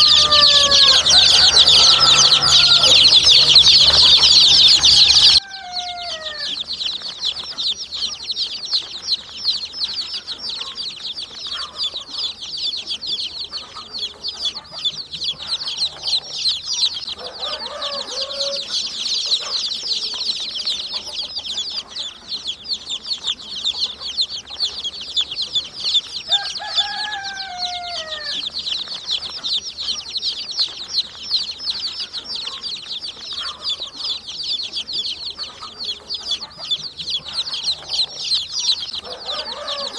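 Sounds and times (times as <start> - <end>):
lower falling calls: 0.0 - 6.6
baby chicks peeping: 0.0 - 39.9.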